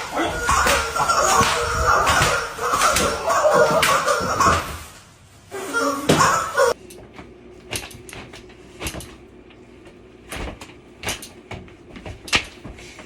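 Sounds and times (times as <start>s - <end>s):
sharp smacks and knocks: 10.3s - 13.0s.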